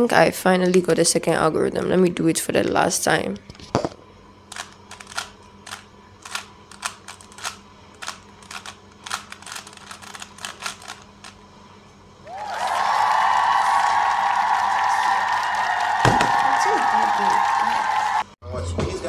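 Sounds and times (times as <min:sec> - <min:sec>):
rubik's cube plastic clicks: 0:04.5 - 0:11.4.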